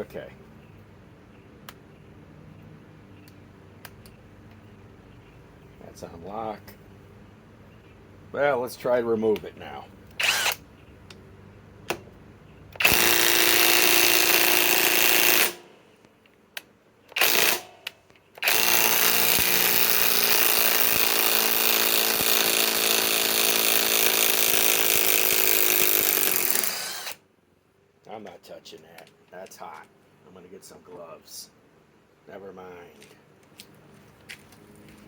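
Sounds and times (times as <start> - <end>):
impact wrench hammering: 12.8 - 15.7, 17.2 - 27.2.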